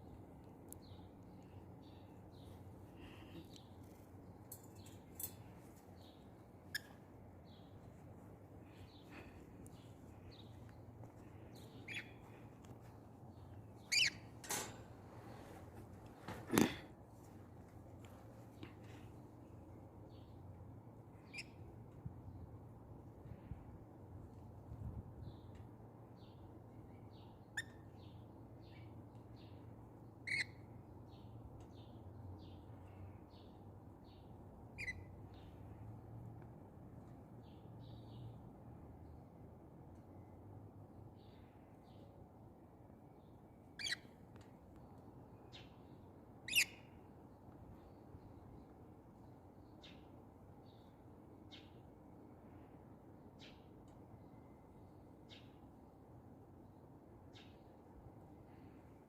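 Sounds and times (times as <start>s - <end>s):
sharp bird calls: 6.0s - 7.7s, 11.3s - 12.4s, 13.8s - 14.3s, 27.5s - 28.8s, 30.2s - 30.7s, 34.8s - 35.5s, 43.8s - 44.2s, 46.4s - 47.0s
faint bird chirps: 6.0s - 7.9s, 8.6s - 12.4s, 13.8s - 14.4s, 21.2s - 21.7s, 26.9s - 29.0s, 30.2s - 31.3s, 34.8s - 35.8s, 43.7s - 44.2s, 46.4s - 47.1s.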